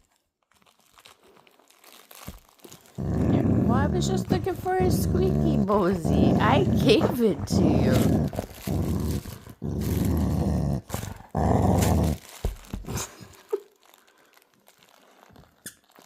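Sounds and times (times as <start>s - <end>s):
dog growling: 2.9s - 13.3s.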